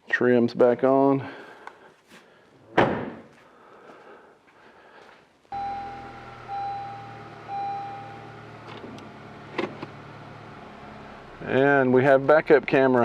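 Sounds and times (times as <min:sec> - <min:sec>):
car low hum: 0:05.5 - 0:13.0
dashboard chime beeps: 0:05.6 - 0:08.3.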